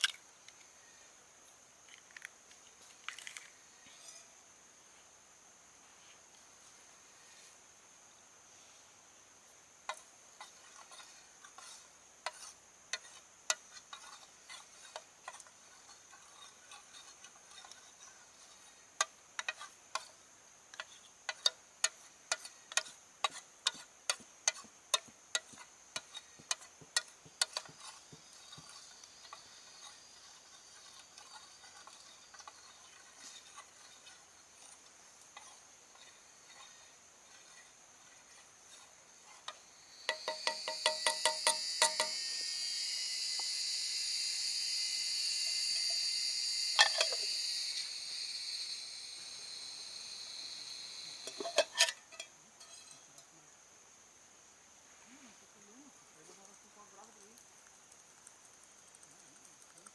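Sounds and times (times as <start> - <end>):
high-pitched insect chirring: 39.6 - 51.8.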